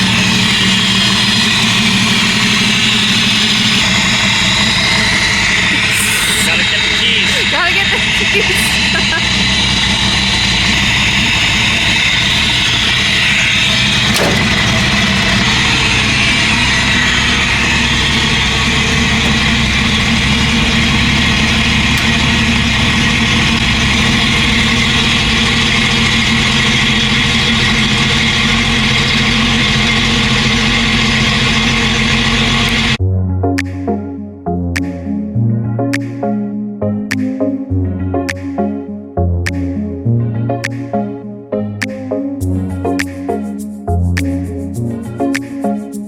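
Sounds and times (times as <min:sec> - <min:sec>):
engine running: 0:00.0 - 0:33.0
music: 0:33.0 - 0:46.0.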